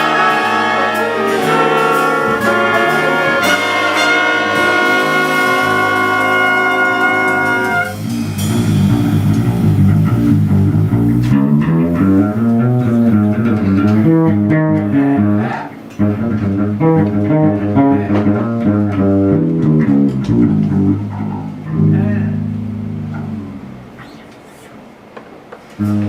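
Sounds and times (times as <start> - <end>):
horns holding a chord: 0.0 - 11.3
low plucked-string solo: 5.8 - 24.3.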